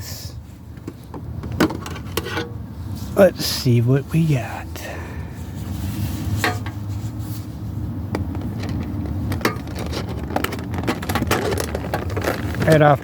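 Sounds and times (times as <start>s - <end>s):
rustling: 5.4s - 13.0s.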